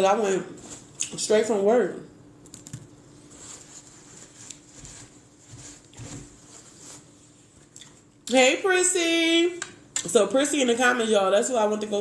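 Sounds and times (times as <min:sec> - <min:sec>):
faint steady hum: 0:00.0 - 0:12.0
soft chewing: 0:04.0 - 0:05.1, 0:07.5 - 0:08.2.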